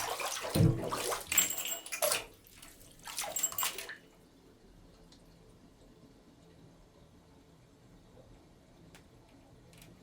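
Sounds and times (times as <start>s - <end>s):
bathtub drain gurgling: 0.0s - 6.7s
faint water trickling: 0.0s - 10.0s.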